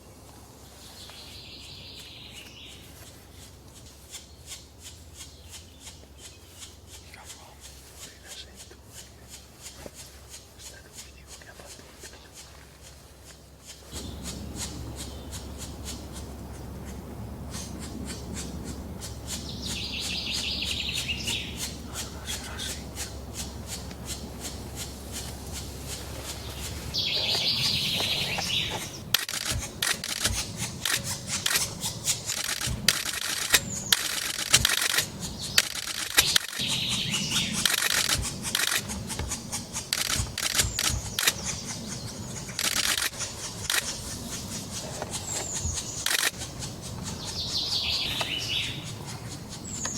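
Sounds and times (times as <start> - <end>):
woodpecker nestlings chattering: 1.0 - 49.9
sharp clicks: 27.3 - 47.4.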